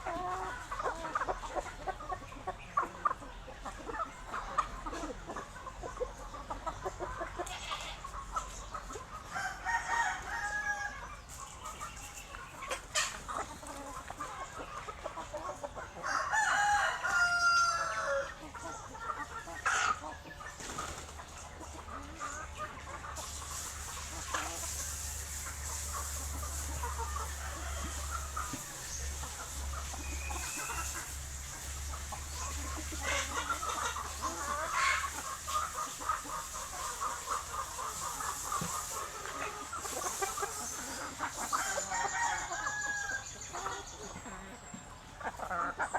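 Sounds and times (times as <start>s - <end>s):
chickens clucking: 0.0s - 45.9s
rooster crowing: 9.4s - 11.0s, 16.0s - 18.3s, 41.6s - 43.3s.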